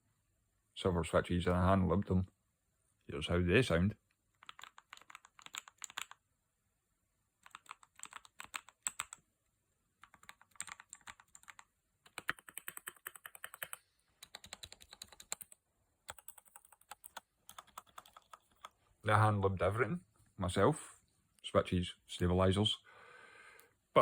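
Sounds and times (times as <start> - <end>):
mechanical keyboard typing: 4.4 - 6.2, 7.4 - 9.2, 10.0 - 18.8.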